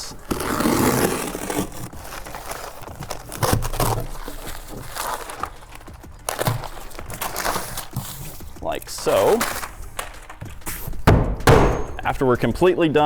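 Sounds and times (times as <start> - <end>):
plastic sheet rustling and crinkling: 0.0 - 11.1, 11.8 - 13.0
dull knocks: 9.4 - 12.4.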